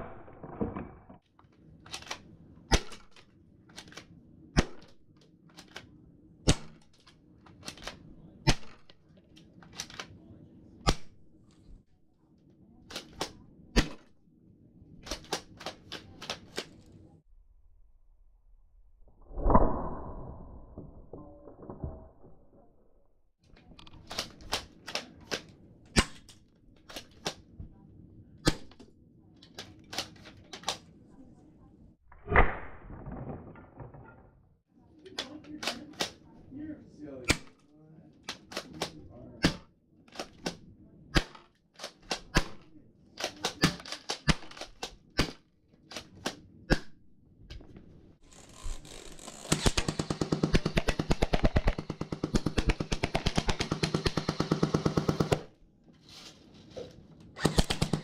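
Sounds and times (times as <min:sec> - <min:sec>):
airsoft gun shots: 0:57.4 - 0:58.0.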